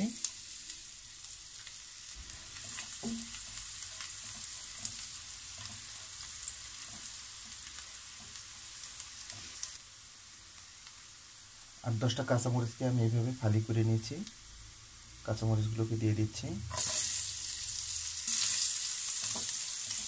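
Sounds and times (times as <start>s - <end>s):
garlic sizzling in butter: 0.0s - 20.0s.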